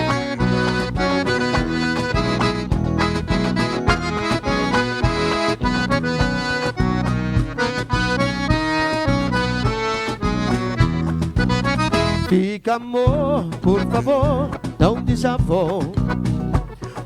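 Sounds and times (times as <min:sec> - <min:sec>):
drums steady beat: 0:00.0 - 0:12.4, 0:13.0 - 0:17.0
accordion: 0:00.0 - 0:17.0.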